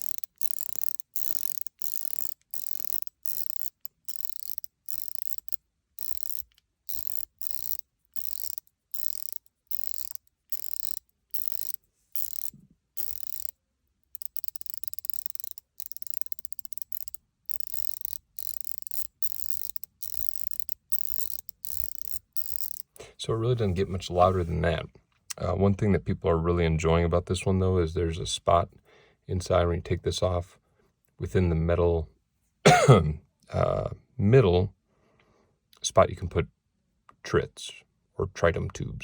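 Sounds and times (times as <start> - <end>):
fidget ring clicking: 0.0 - 23.0.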